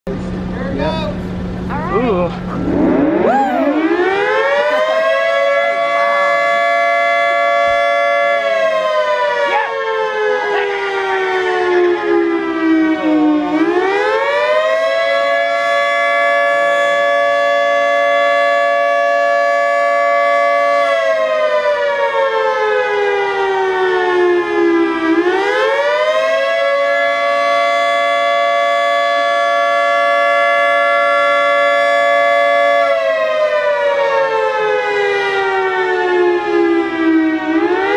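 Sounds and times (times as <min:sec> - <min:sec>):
dual-tone warning siren wailing: 0:01.8 - 0:37.9.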